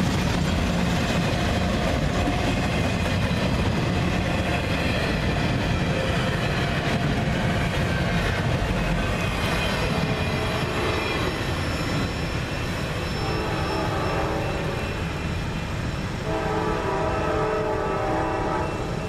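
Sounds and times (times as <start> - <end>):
freight train wheels rumbling: 0.0 - 19.0
wheels squealing: 7.8 - 16.1.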